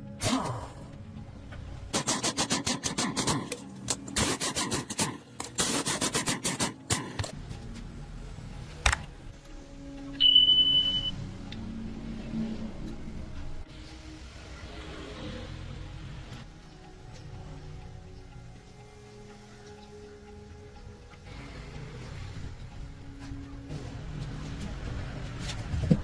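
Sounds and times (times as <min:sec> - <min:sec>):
rapid scraping strokes: 0:01.9 - 0:03.6, 0:04.2 - 0:07.2
brief steady high tone: 0:10.0 - 0:11.3.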